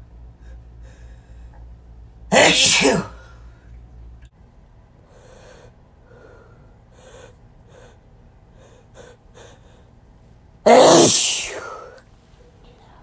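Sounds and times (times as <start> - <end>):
faint gasping breaths: 0.3 - 1.7, 5.0 - 10.0.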